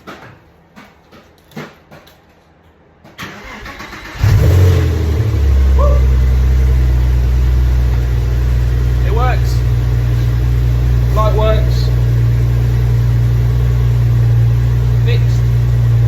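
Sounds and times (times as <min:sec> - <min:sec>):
car engine starting and idling: 0:03.2 - 0:16.0.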